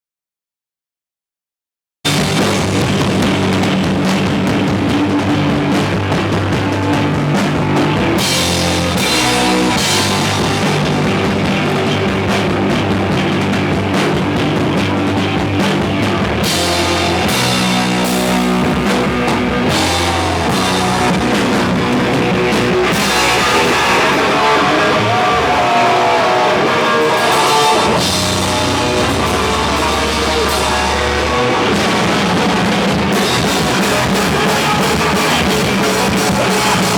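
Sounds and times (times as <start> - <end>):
punk band playing live: 2.1 - 36.9.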